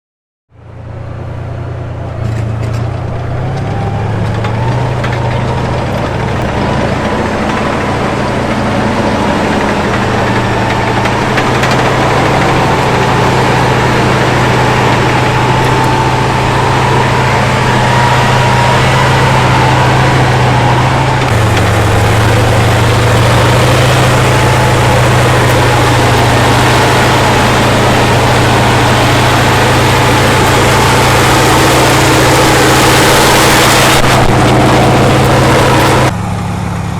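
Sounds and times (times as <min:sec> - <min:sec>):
diesel tank engine running: 0:00.5 - 0:36.9.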